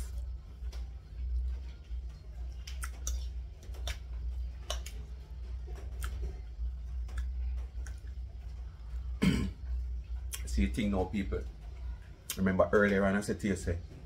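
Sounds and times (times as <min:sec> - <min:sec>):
steady low hum: 0:00.0 - 0:14.0
eating clicks: 0:02.6 - 0:05.1, 0:05.9 - 0:06.4.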